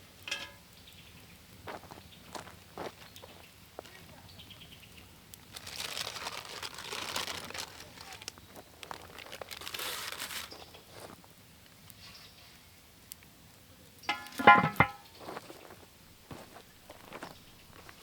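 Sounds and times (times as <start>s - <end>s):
crinkling rustling handling noise: 5.4s - 11.2s, 14.1s - 18.0s.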